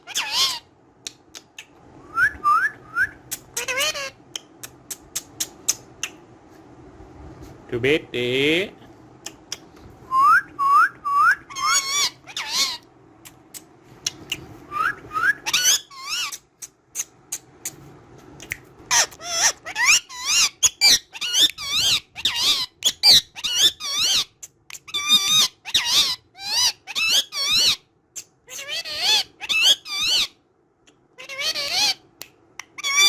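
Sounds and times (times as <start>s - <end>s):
parakeet chirping and chattering: 0.0s - 1.8s, 3.3s - 6.2s, 11.4s - 17.8s, 18.8s - 33.0s.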